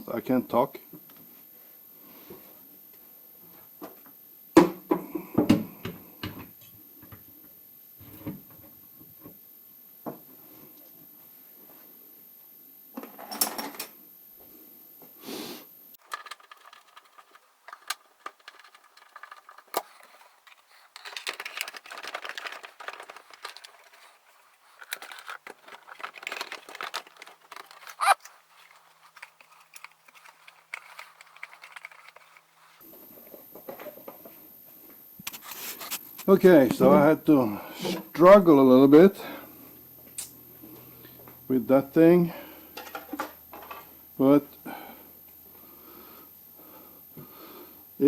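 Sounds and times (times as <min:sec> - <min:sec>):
plastic parts clicking: 0:16.0 - 0:24.1, 0:24.8 - 0:32.5
plastic scraping: 0:24.8 - 0:32.6.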